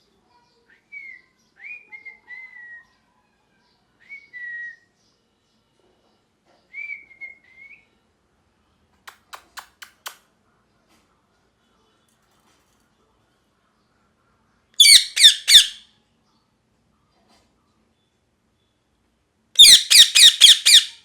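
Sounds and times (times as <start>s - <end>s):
parrot whistling: 14.8s - 15.8s, 19.6s - 21.0s.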